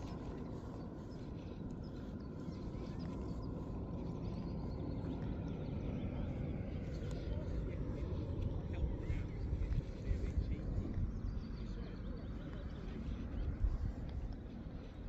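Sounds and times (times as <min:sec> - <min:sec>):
wind on microphone: 0:07.6 - 0:15.0.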